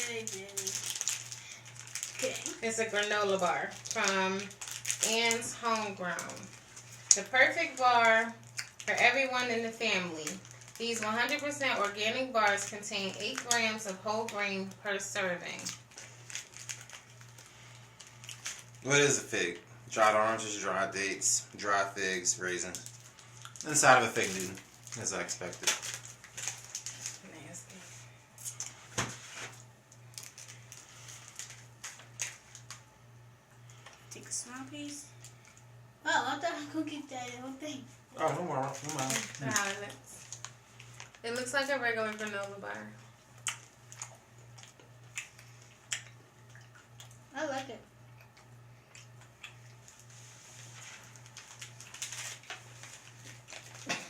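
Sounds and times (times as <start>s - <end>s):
snack packaging crinkling: 0.0s - 27.7s, 28.4s - 32.9s, 38.2s - 47.6s, 48.2s - 54.0s
steady low hum: 0.0s - 54.0s.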